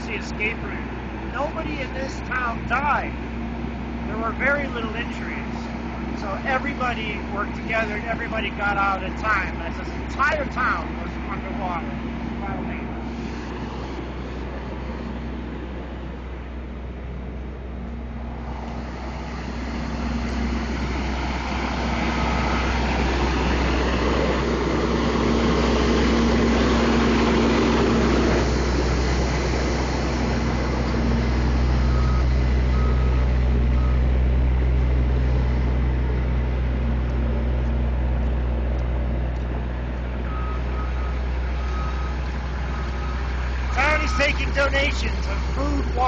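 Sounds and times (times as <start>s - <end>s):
heavy engine running: 0.0s - 46.0s
reversing alarm beeps: 31.8s - 34.1s, 40.3s - 45.3s.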